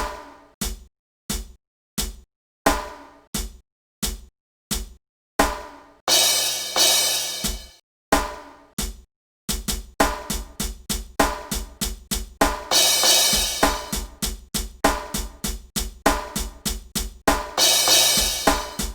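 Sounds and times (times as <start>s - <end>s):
drum kit hip-hop groove: 0.0s - 18.9s
cymbal crash: 6.1s - 7.7s.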